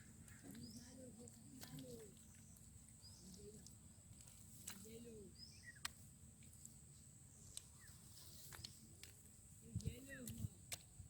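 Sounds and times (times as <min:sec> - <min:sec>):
bird chirps and calls: 0:00.0 - 0:03.7, 0:05.0 - 0:05.9.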